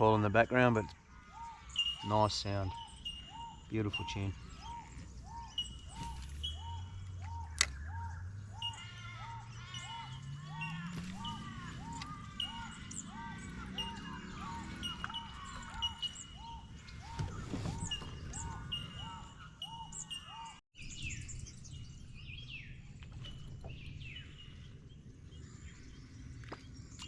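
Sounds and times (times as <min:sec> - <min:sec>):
birds quick falling calls: 0:00.0 - 0:21.2
bellbirds pinging: 0:00.0 - 0:27.0
bird whistling arching note: 0:00.8 - 0:25.1.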